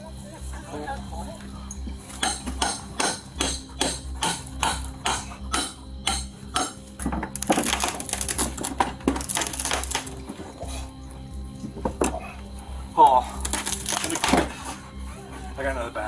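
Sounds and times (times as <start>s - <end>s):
wooden boards being struck: 2.2s - 10.4s, 13.4s - 14.5s
wood cracking and splintering: 7.0s - 10.6s, 13.3s - 14.5s.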